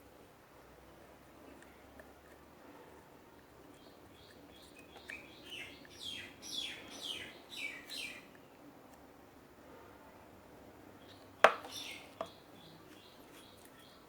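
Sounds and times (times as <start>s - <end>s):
bird chirping: 3.7s - 8.3s, 11.0s - 14.0s.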